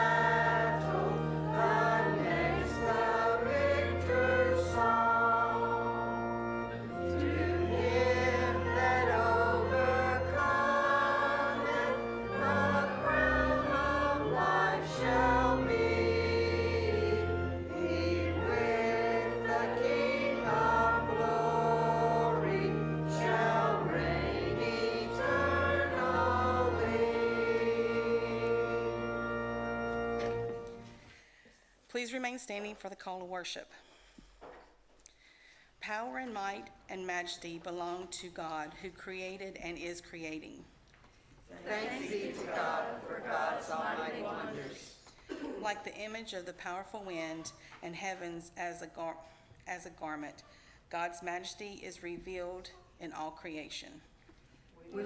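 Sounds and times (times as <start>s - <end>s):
congregation singing a hymn: 0.0s - 31.1s, 41.5s - 45.4s.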